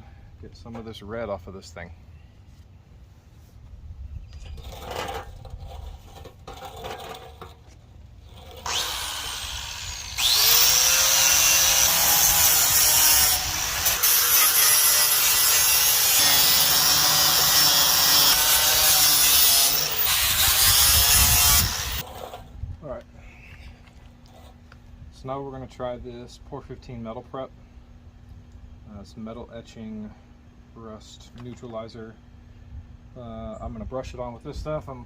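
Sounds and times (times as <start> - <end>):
power tool grinding metal: 8.3 - 22.4.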